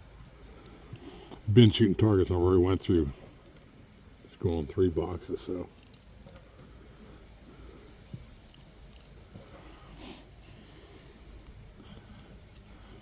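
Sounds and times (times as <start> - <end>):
insect chirring: 0.0 - 13.0
faint handling clicks: 5.7 - 6.6, 8.4 - 9.6, 12.4 - 12.9.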